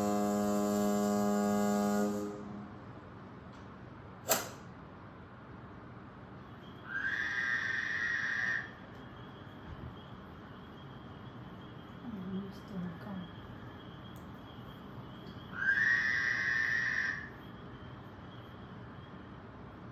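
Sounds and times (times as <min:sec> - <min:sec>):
low steady hum: 0:00.0 - 0:06.9
sharp click: 0:03.6 - 0:04.7.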